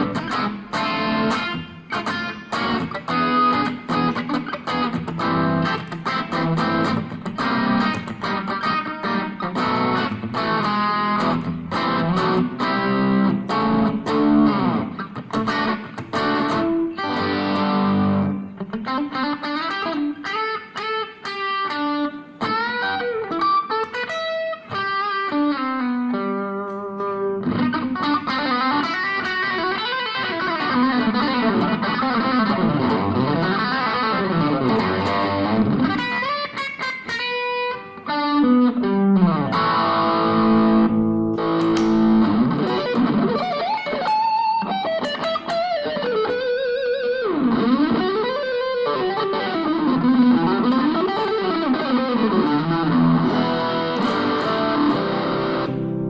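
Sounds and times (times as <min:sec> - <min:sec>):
clean electric guitar: 0:00.0 - 0:56.0.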